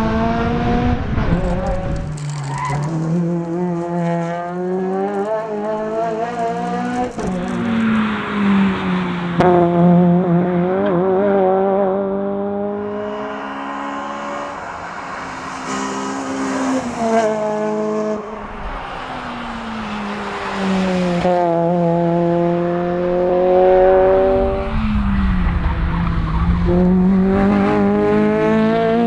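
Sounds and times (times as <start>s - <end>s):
car engine revving hard: 9.4s - 18.3s, 21.0s - 25.0s, 26.6s - 29.0s.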